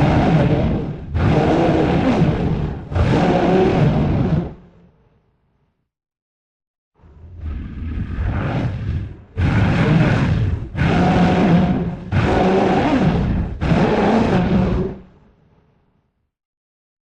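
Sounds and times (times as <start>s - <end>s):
creature roaring: 0.0s - 4.6s, 7.0s - 15.1s.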